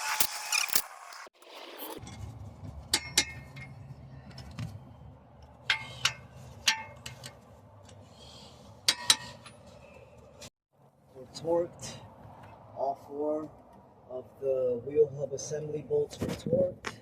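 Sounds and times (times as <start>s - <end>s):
metal tools clinking: 0.0s - 2.0s.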